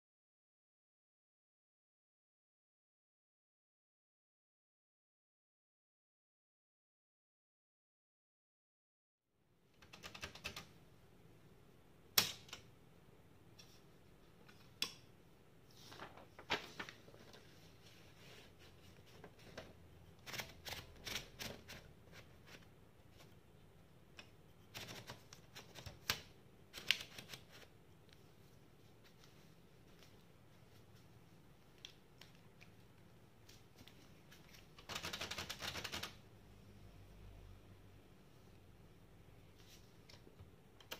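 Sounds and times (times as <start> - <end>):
manual typewriter clacking: 34.8 - 36.2.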